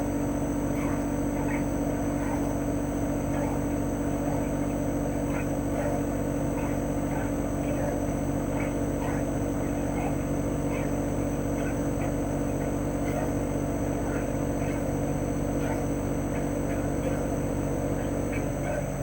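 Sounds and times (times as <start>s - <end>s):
compressor humming: 0.0s - 19.0s
fan rushing: 0.0s - 19.0s.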